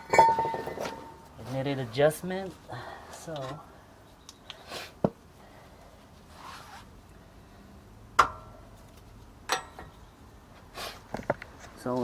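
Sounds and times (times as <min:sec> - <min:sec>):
sharp metallic clanks: 0:00.0 - 0:01.3, 0:09.5 - 0:10.0.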